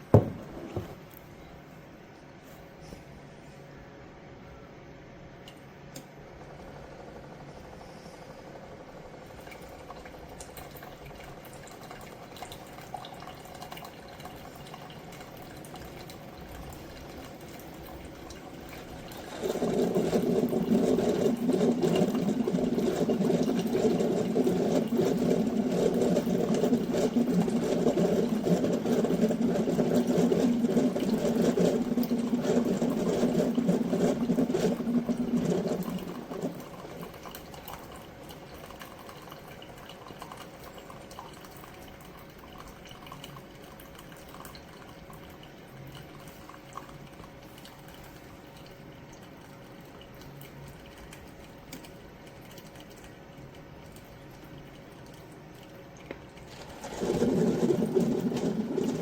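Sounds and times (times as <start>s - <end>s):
coffee maker pump buzzing hum: 0.0s - 59.0s
coffee maker heating hiss: 6.7s - 42.4s, 56.6s - 59.0s.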